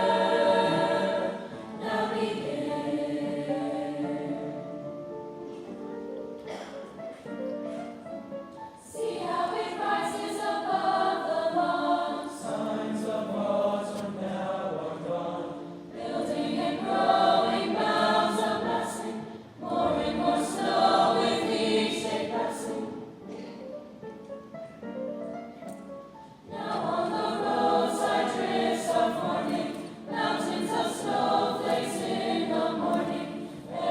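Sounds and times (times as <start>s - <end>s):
school chorus singing in parts: 0.0s - 4.8s, 8.8s - 23.4s, 26.5s - 33.9s.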